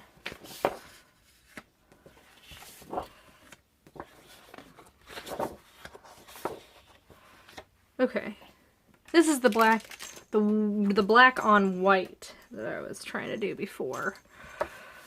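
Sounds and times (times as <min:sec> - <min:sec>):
paper rustling and sliding: 0:00.2 - 0:07.6.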